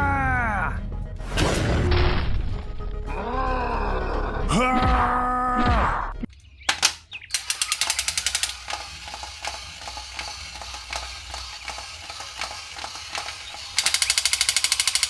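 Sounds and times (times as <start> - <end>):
rapid ratchet-like clicking: 6.7 - 15.0.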